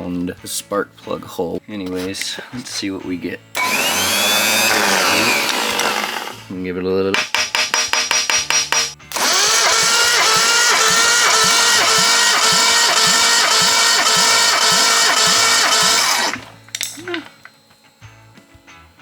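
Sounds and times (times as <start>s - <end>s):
engine cranking on starter: 3.6s - 6.5s, 9.1s - 16.6s
rapid ticking: 8.8s - 16.5s.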